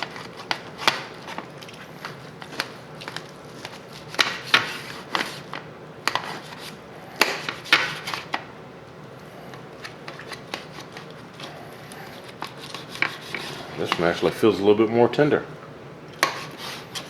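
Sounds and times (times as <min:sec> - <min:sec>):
knife cutting through ribs: 0:11.5 - 0:14.1.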